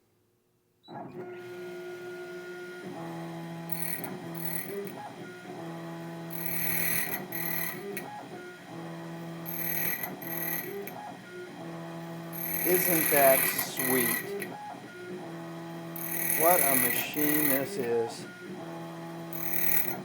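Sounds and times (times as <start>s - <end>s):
key cutting machine motor hum: 1.2s - 20.0s
cutter grinding hiss: 3.7s - 4.9s, 6.3s - 7.9s, 9.5s - 10.9s, 12.4s - 14.5s, 15.9s - 18.3s, 19.2s - 20.0s.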